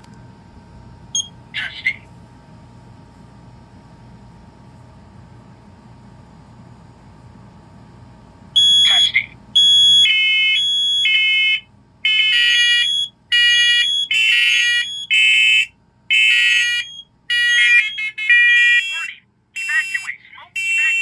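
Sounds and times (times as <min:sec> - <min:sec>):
smoke alarms beeping: 0:01.2 - 0:01.4, 0:08.6 - 0:21.0.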